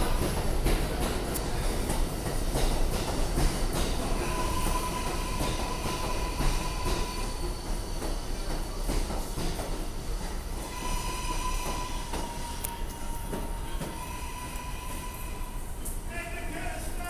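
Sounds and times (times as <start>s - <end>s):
subway train wheels clacking: 0.0s - 17.0s.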